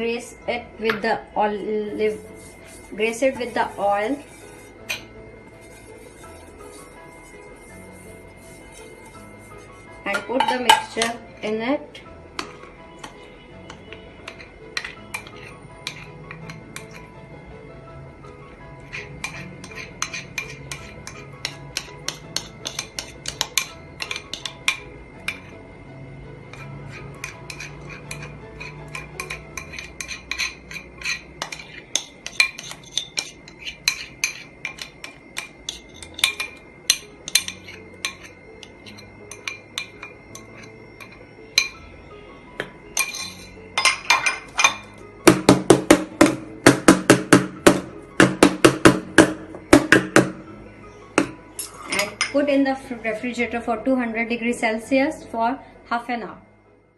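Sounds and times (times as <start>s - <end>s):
metal utensil scraping a bowl: 1.9s - 11.7s, 12.4s - 17.2s, 18.8s - 25.6s, 26.5s - 41.8s, 43.0s - 45.0s, 51.2s - 52.4s.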